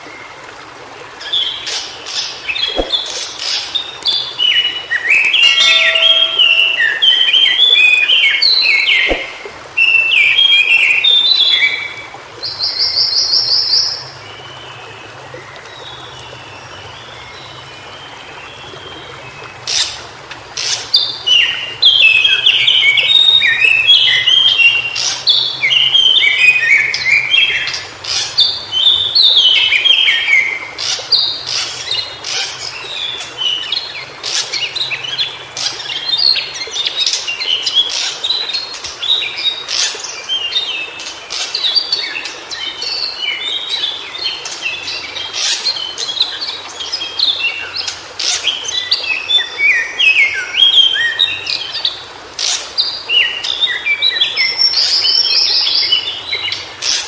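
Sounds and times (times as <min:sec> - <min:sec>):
bird warbling song: 0:01.2 - 0:20.0, 0:20.6 - 0:57.0.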